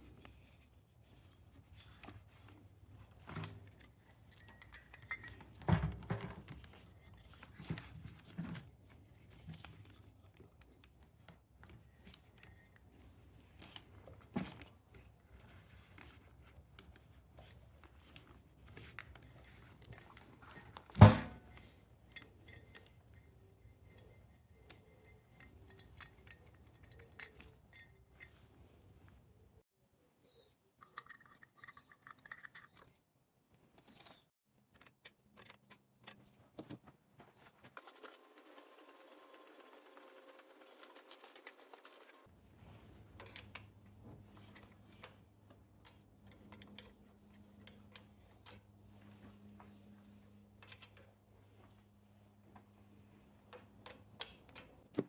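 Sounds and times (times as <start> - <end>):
small clicks and clinks: 0.4 - 8.6, 9.2 - 29.3, 30.8 - 33.1, 33.8 - 36.8, 44.3 - 51.2.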